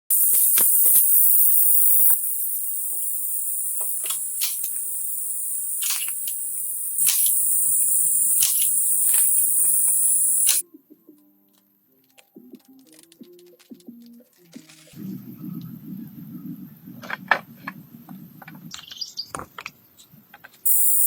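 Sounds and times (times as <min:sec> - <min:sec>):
insects chirring: 0:00.1 - 0:10.6, 0:20.6 - 0:21.0.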